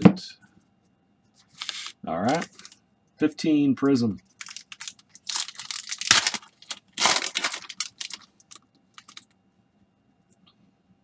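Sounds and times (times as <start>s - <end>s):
cards rustling and clicking: 1.4s - 2.8s
wrapper crinkling: 1.4s - 2.8s, 4.2s - 9.3s
foil pack tearing open: 1.5s - 2.8s, 4.4s - 9.3s.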